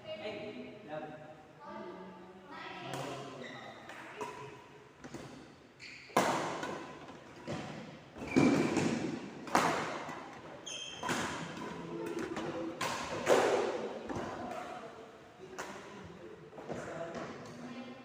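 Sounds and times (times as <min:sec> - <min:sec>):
short high squeaks: 0:10.6 - 0:11.1.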